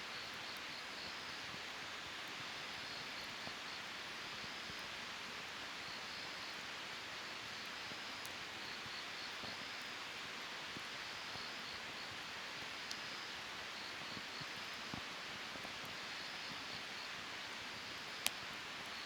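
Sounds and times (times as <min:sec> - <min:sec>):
campfire hissing: 0:00.0 - 0:19.0
fire crackling pops: 0:18.0 - 0:18.5.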